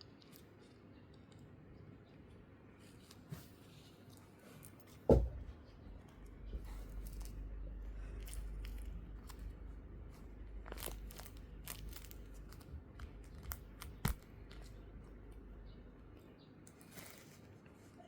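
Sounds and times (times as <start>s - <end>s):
squishy toy crinkling and rustling: 6.5s - 15.4s, 16.6s - 18.0s
sharp crackles: 10.5s - 14.8s.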